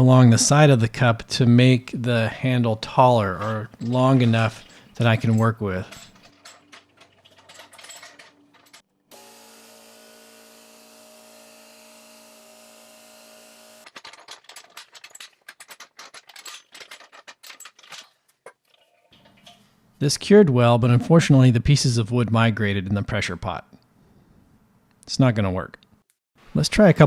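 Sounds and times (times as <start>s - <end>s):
small motor humming: 9.1s - 13.8s.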